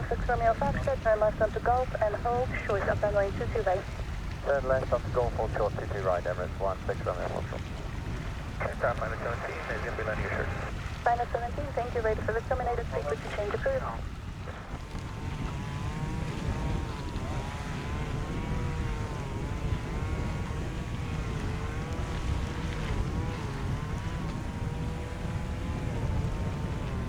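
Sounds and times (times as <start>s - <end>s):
jet engines rumbling: 0.0s - 21.2s
wind noise on microphone: 0.0s - 27.0s.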